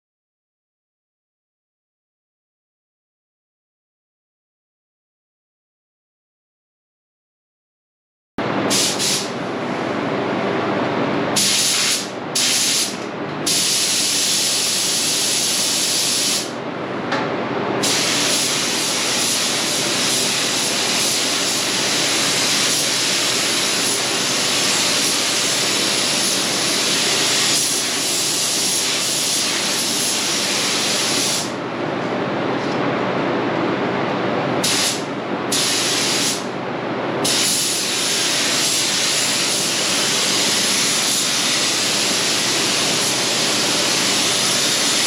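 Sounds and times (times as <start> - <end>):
paint spray gun hissing: 8.7 - 9.3, 34.6 - 36.4.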